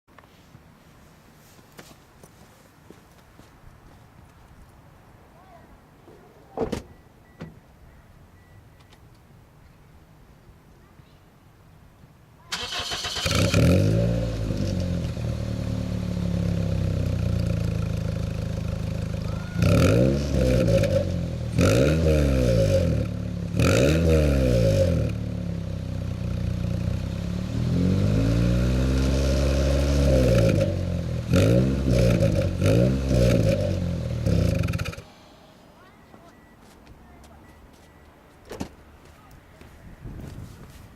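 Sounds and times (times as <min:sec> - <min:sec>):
car engine revving: 0:12.6 - 0:35.5.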